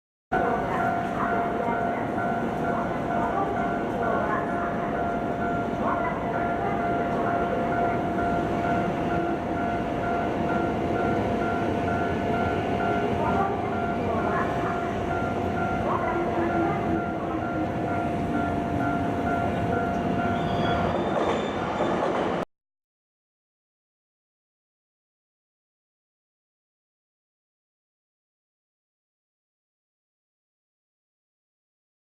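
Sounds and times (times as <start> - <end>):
crossing warning bell ringing: 0.4 - 22.1
train running over crossing: 0.4 - 22.4.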